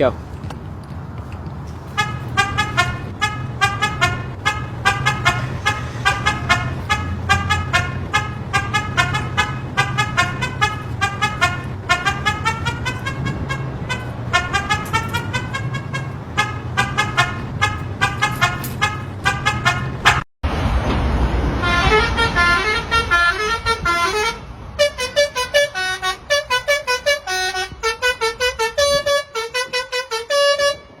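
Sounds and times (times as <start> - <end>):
engine rumble: 0.0 - 31.0
musical vehicle horns: 1.8 - 20.3, 21.5 - 31.0.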